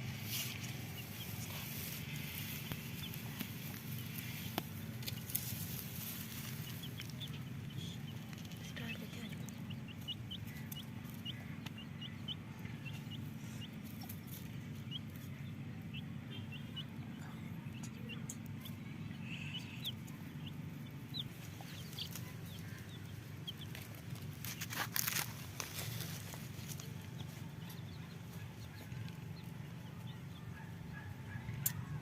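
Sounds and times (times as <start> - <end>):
chicks cheeping: 0.0 - 32.0
steady low hum: 0.0 - 32.0
scratchy rustling: 23.8 - 27.0.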